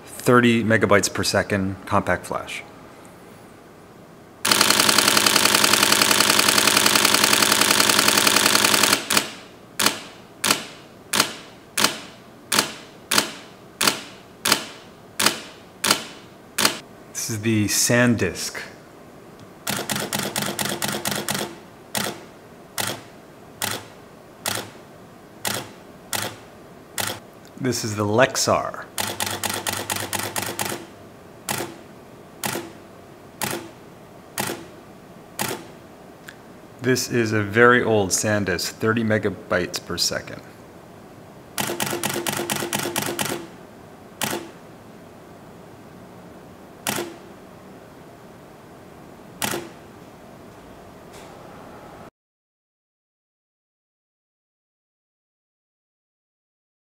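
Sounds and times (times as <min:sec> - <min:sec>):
camera shutter clicks: 0:35.4 - 0:35.7, 0:41.6 - 0:43.5, 0:44.2 - 0:44.6, 0:46.9 - 0:47.2, 0:49.4 - 0:49.8.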